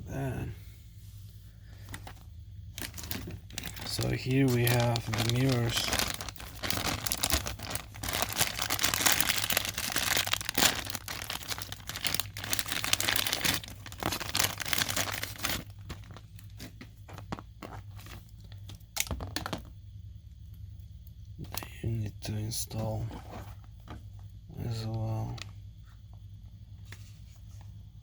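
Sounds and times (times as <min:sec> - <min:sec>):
plastic packaging crinkling: 0:01.9 - 0:19.7.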